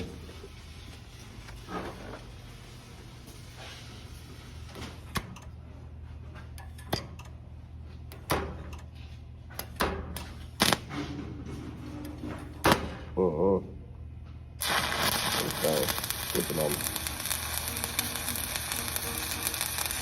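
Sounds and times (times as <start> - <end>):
metal welding gear clanking: 14.6 - 20.0.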